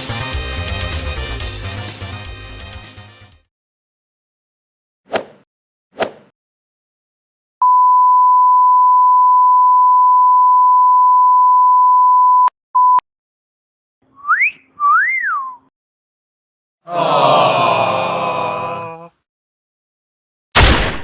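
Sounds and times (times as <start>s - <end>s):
censor bleep: 7.6s - 13.0s
two-note wolf whistle: 14.2s - 15.7s.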